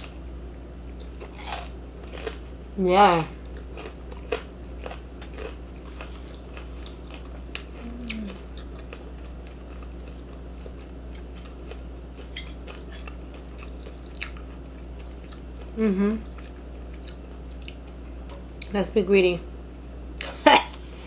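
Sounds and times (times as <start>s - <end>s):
chewing food: 3.1s - 18.7s
brief low hum: 7.8s - 8.4s.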